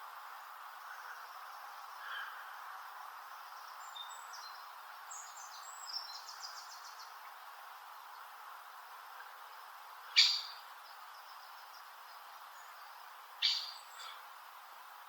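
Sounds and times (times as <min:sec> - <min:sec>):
background hiss: 0:00.0 - 0:15.0
bird chirps and trills: 0:10.1 - 0:14.2.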